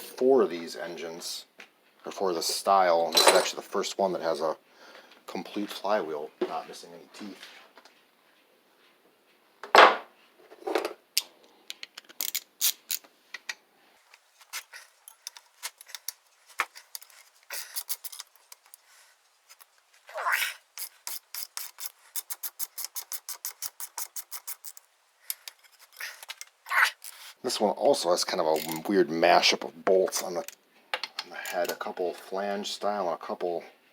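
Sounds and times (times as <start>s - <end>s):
clicks and scrapes of hand tools: 14.1s - 27.4s, 28.5s - 28.9s
ratchet clicking: 14.6s - 18.8s, 20.8s - 27.3s.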